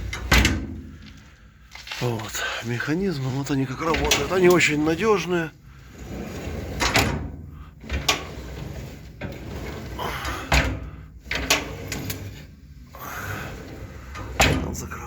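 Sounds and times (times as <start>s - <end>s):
knocks and clunks: 0.0s - 2.0s, 3.7s - 4.9s, 14.1s - 15.0s
fireplace door sliding: 3.0s - 15.0s.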